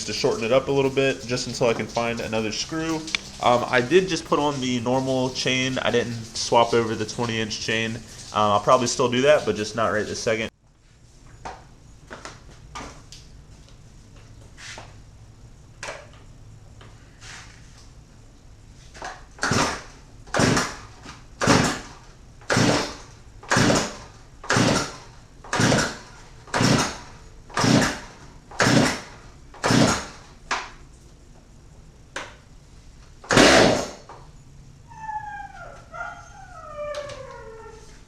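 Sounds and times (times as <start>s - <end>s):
chainsaw recoil starter pulls: 28.6s - 30.1s.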